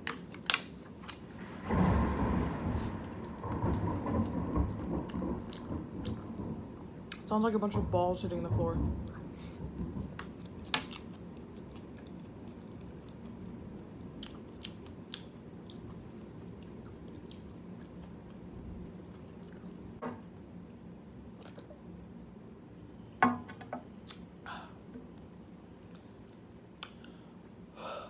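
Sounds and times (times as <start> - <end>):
rain hiss: 1.3 - 7.4
close chewing noodles: 10.4 - 20.0.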